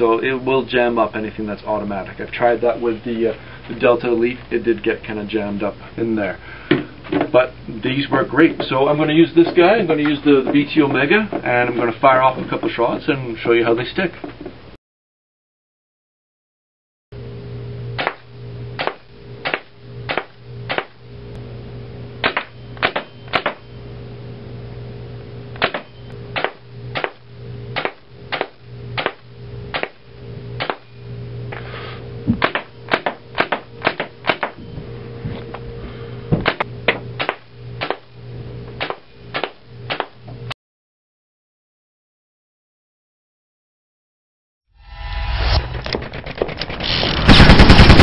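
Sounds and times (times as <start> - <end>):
steady low hum: 0.0 - 14.8, 17.2 - 40.6, 44.8 - 48.0
paintball marker shots: 22.2 - 23.6.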